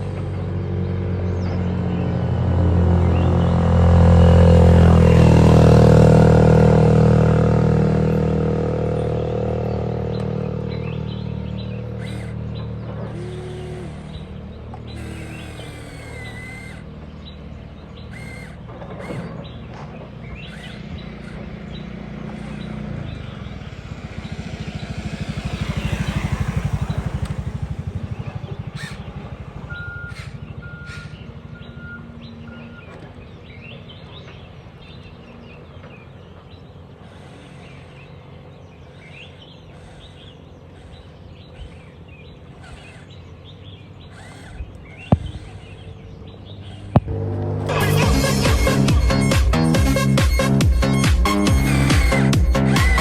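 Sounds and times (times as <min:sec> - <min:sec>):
birds chirping: 0:00.0 - 0:53.0
engine running: 0:00.0 - 0:53.0
music: 0:47.7 - 0:53.0.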